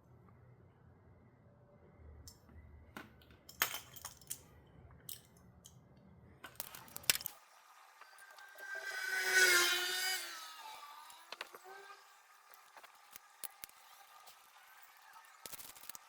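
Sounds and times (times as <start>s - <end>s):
metal parts and tools clinking: 3.2s - 5.8s, 6.4s - 7.5s, 10.7s - 16.0s.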